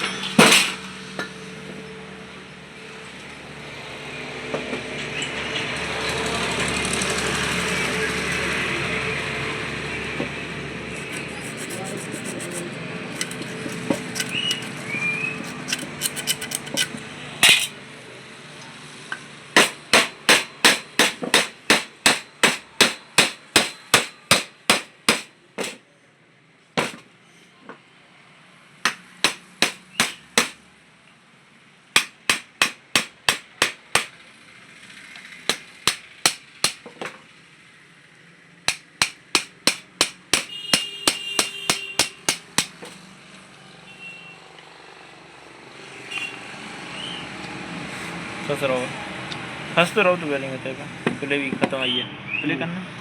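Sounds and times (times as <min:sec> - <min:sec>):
hammer blows on metal: 0:19.6 - 0:25.8, 0:28.9 - 0:30.6, 0:32.0 - 0:34.1, 0:35.5 - 0:36.8, 0:38.7 - 0:43.0.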